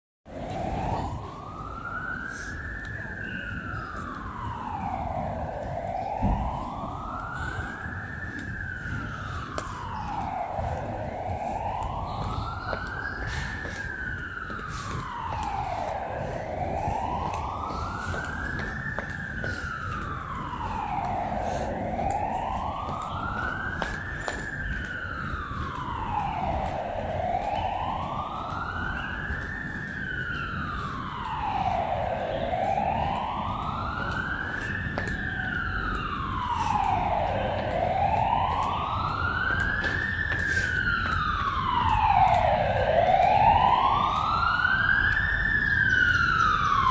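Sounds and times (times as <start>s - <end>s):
siren wailing: 0.3s - 46.9s.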